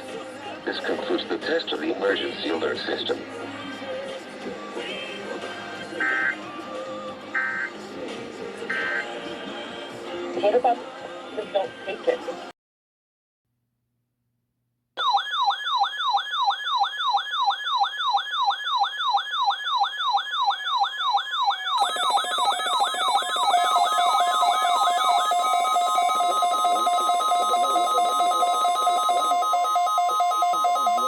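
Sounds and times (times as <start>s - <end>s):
electronic siren yelp: 6.0s - 6.4s, 7.4s - 7.7s, 8.7s - 9.1s, 15.0s - 31.0s.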